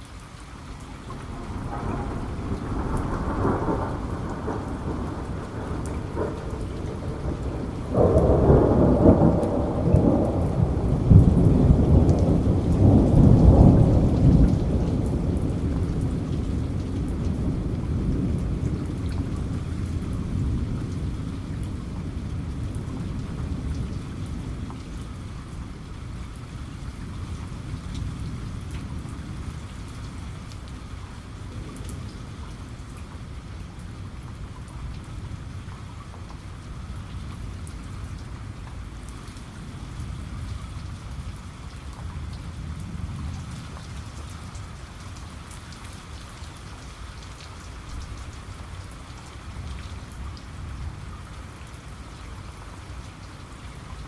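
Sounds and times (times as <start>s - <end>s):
raindrops pattering: 0.0s - 54.0s
steady rain: 0.0s - 54.0s
low rumble of thunder: 0.6s - 54.0s.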